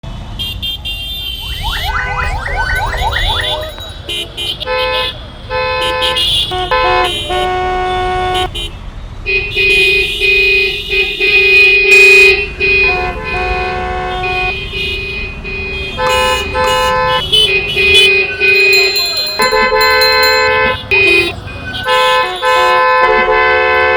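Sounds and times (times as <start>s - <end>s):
vehicle horns honking: 4.0s - 23.9s.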